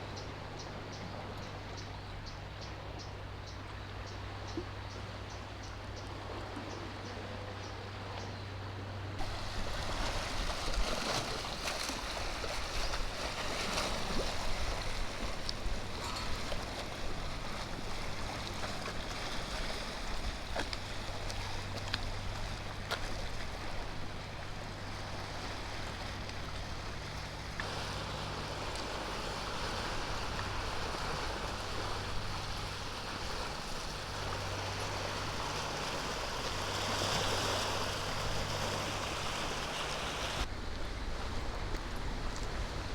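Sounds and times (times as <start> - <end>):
small waves lapping on shore: 0.0 - 42.9
steady low hum: 0.0 - 42.9.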